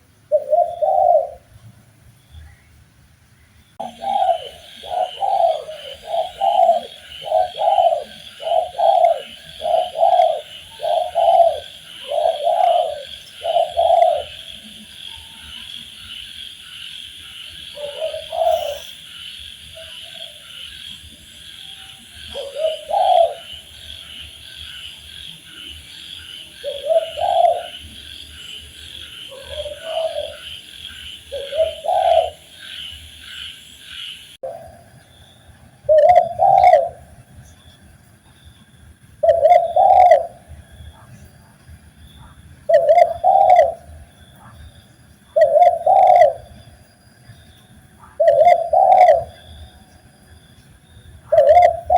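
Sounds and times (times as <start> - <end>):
dove cooing: 0.2 - 1.5, 3.8 - 16.1, 17.4 - 34.8, 35.8 - 37.2, 39.2 - 41.2, 42.2 - 44.7, 45.3 - 46.6, 48.0 - 49.8, 51.2 - 51.9.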